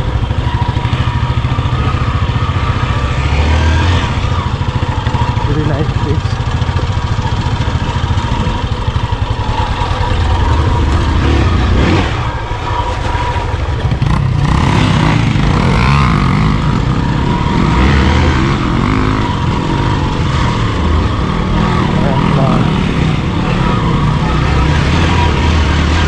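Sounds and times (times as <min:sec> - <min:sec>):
motorcycle engine revving: 0:00.0 - 0:26.0.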